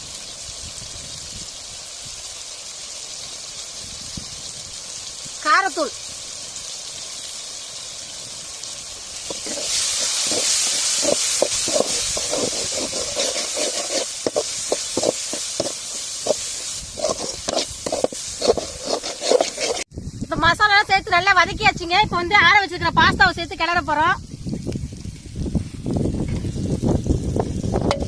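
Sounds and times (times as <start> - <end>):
food sizzling in a pan: 0.0 - 28.0
spatula scraping a pan: 9.2 - 19.9.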